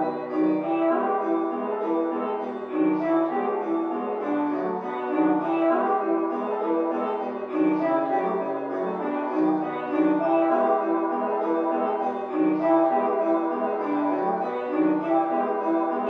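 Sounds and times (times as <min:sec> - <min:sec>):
orchestral instruments: 0:00.0 - 0:16.0
piano repeating pattern: 0:00.0 - 0:16.0.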